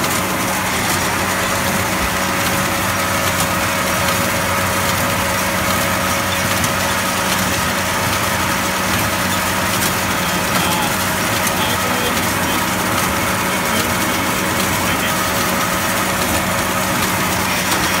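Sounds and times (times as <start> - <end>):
tractor engine running: 0.0 - 18.0
machinery hissing: 9.7 - 18.0.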